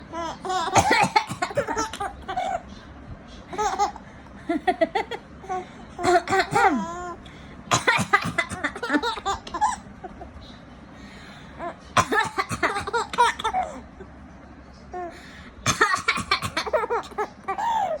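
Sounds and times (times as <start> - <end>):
baby giggling: 0.1 - 2.8, 3.5 - 7.2, 8.4 - 10.5, 15.8 - 18.0
adult coughing: 0.7 - 2.5, 6.0 - 6.9, 7.7 - 9.8, 12.0 - 13.8, 15.6 - 18.0.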